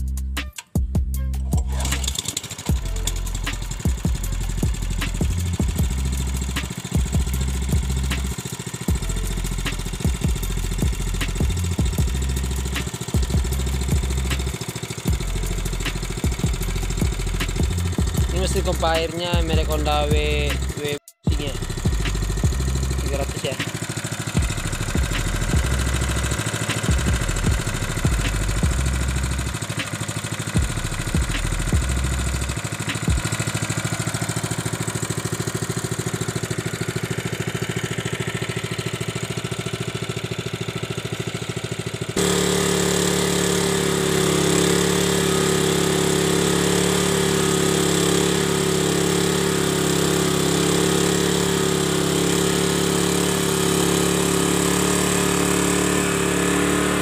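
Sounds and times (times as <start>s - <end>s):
water pump engine running: 1.4s - 57.0s.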